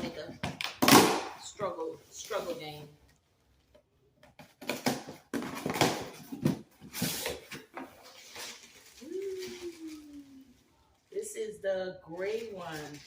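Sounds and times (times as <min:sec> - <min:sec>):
packaging rustling and crinkling: 0:04.6 - 0:11.2, 0:12.1 - 0:13.0.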